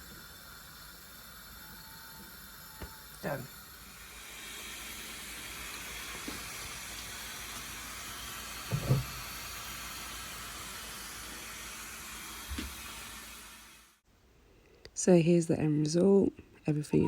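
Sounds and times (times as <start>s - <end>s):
pressure cooker steam hissing: 0.0s - 14.0s
soft knock: 8.7s - 9.2s.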